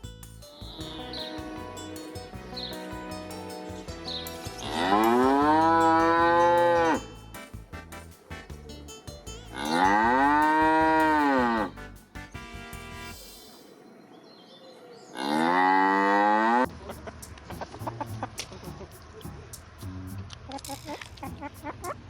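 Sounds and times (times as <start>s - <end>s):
quiet background music: 0.0s - 15.5s
cow mooing: 9.6s - 11.7s.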